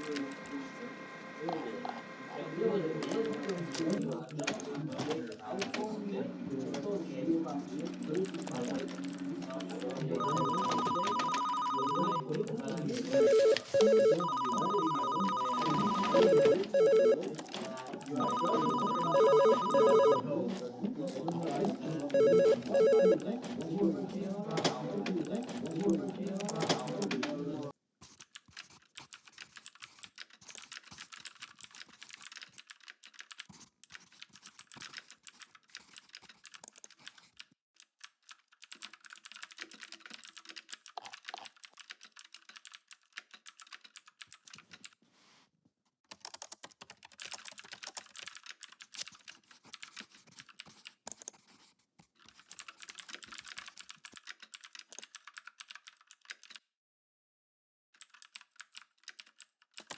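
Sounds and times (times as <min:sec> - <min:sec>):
typing on computer keyboard: 0:07.6 - 0:20.2, 0:21.9 - 0:27.4, 0:28.2 - 0:45.0, 0:46.1 - 0:56.6, 0:58.0 - 0:59.9.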